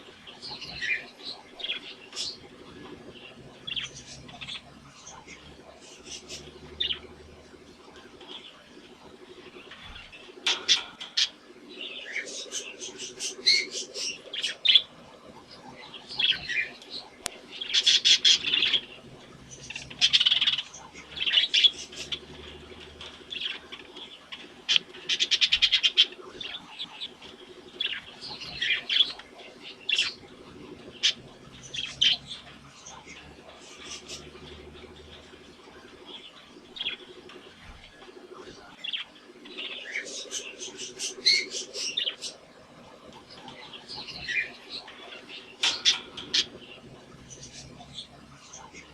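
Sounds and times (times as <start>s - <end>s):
budgerigars chirping and warbling: 0.0s - 48.9s
faint low hum: 0.0s - 48.9s.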